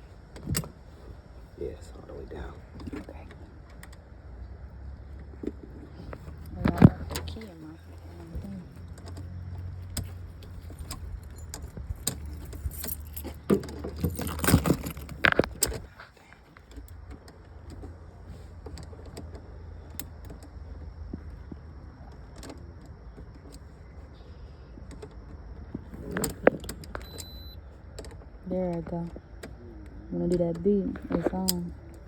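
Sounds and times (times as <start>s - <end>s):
steady low rumble: 0.0s - 32.0s
keys jangling: 9.0s - 16.0s.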